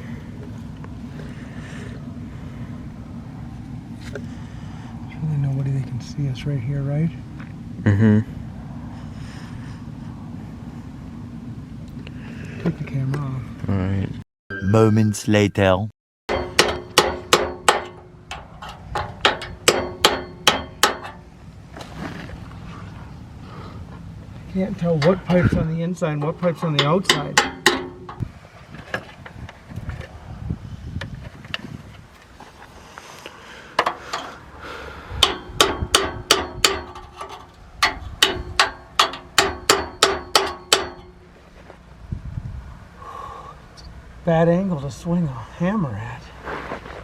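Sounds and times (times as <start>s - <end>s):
hammer striking metal pipe: 16.3s - 21.2s, 26.6s - 28.2s, 35.2s - 41.2s.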